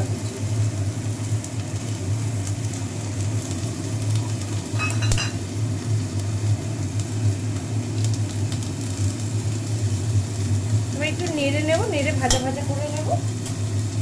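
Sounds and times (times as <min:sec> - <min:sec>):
onion sizzling in oil: 0:00.0 - 0:14.0
metal spoon clinking on pan: 0:04.8 - 0:05.4, 0:12.2 - 0:12.7.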